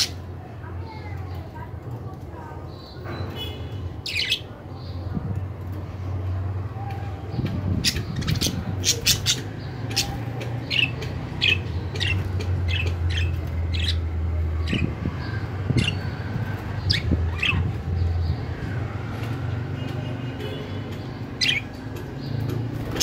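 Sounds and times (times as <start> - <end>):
budgerigars chirping and squawking: 3.4 - 4.5, 7.3 - 18.4, 21.2 - 21.8, 22.4 - 23.0.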